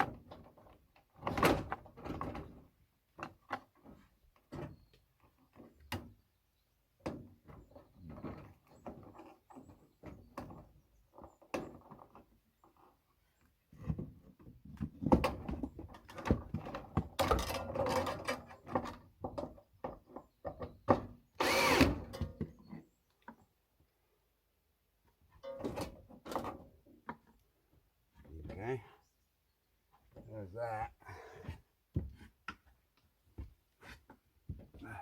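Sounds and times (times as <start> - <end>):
knocks and clatter from handling: 13.8 - 21.2
cordless drill running: 21.4 - 22.0.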